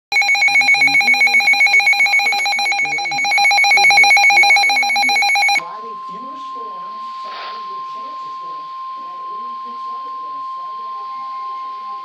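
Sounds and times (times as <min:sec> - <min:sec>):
pulsing electronic siren: 0:00.1 - 0:12.0
steady alarm tone: 0:00.1 - 0:12.0.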